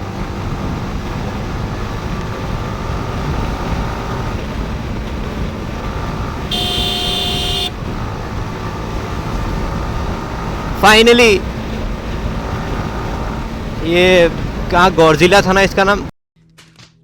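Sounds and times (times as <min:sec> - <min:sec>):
motorcycle engine running: 0:00.0 - 0:14.6
wind and road noise: 0:00.0 - 0:16.5
vehicle horn blast: 0:06.5 - 0:07.8.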